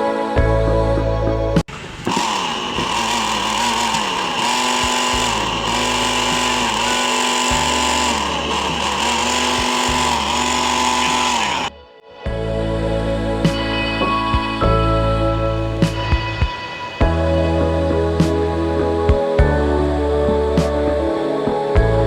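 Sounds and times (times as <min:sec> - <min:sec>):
background music: 0:00.0 - 0:01.7, 0:05.1 - 0:22.0
motor running: 0:02.0 - 0:11.7.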